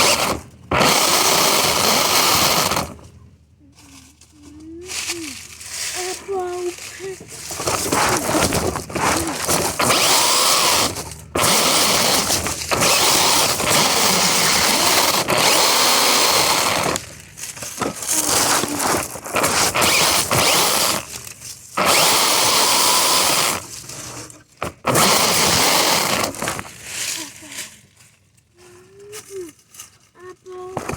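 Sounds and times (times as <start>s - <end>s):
electric rc car motor whining: 0.0s - 3.1s, 7.3s - 17.1s, 17.8s - 26.7s
wheels rolling: 0.0s - 3.4s, 4.6s - 28.4s.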